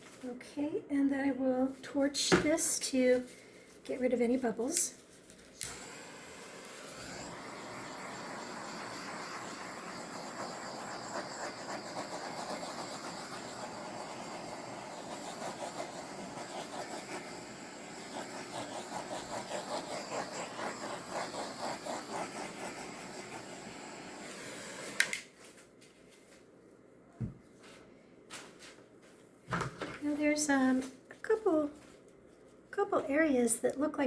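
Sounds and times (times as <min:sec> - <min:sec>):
torch switch click: 0:05.6 - 0:06.1, 0:24.8 - 0:25.3
torch flame hissing: 0:05.6 - 0:25.4.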